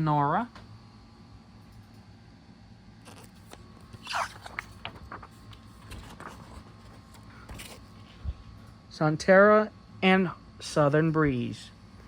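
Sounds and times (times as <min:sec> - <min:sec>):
paper pages rustling: 0:03.1 - 0:08.2.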